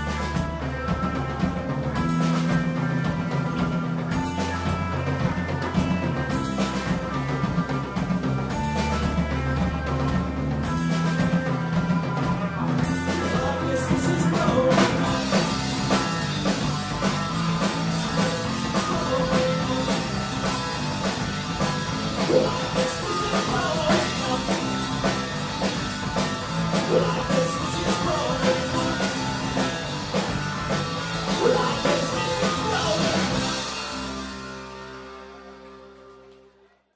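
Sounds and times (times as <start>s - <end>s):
drum kit: 0.0s - 36.5s
live rock band playing: 0.0s - 36.5s
electric guitars: 0.0s - 36.7s
person singing: 12.2s - 21.2s, 22.2s - 25.6s, 26.7s - 30.4s, 31.1s - 34.0s.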